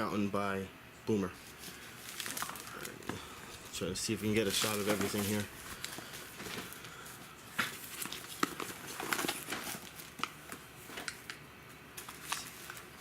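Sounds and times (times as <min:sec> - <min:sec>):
rustling: 0:01.4 - 0:11.1.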